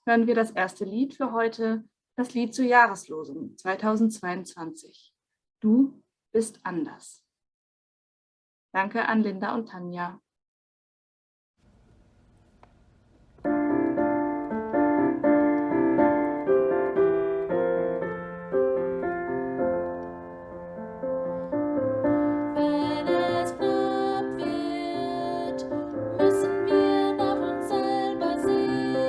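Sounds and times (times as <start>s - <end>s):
piano playing church song: 13.4s - 29.0s
person singing: 22.5s - 29.0s.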